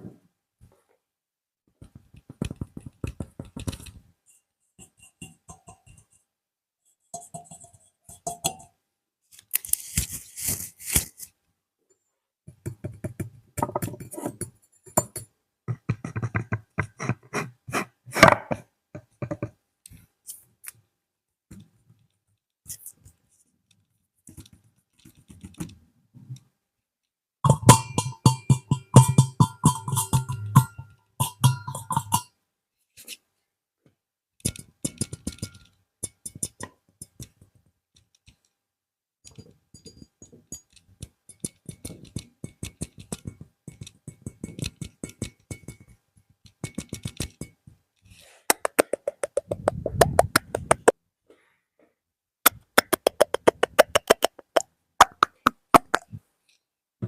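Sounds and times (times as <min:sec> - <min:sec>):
rapid sharp tapping: 0:48.5 - 0:50.9, 0:52.5 - 0:56.1
scratching: 0:48.5 - 0:50.9, 0:52.8 - 0:56.2.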